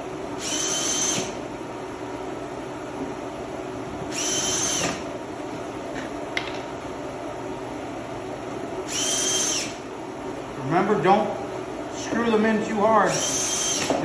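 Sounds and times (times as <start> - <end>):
screw gun motor whine: 0.4 - 1.4, 4.1 - 5.0, 8.9 - 9.8, 13.1 - 14.0.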